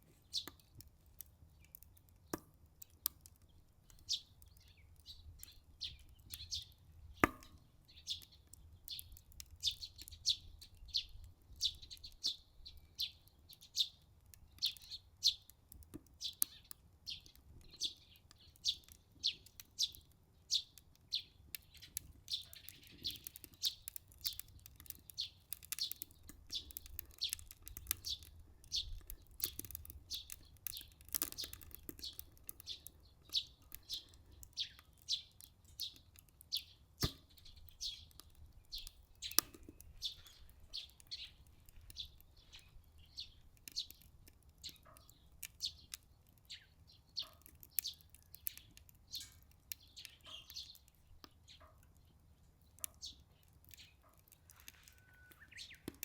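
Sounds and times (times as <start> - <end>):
small birds chirping: 0.0 - 56.0
sharp pops: 7.2 - 7.6, 37.0 - 37.4.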